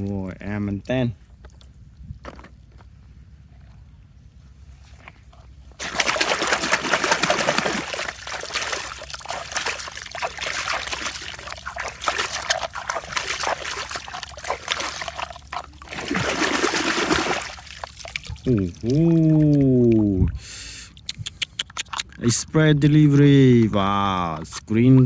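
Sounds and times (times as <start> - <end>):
water pouring and splashing: 5.8 - 25.0.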